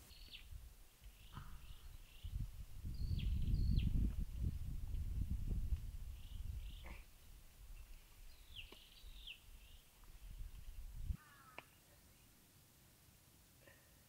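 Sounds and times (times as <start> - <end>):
small birds chirping: 0.0 - 4.5, 6.1 - 12.4.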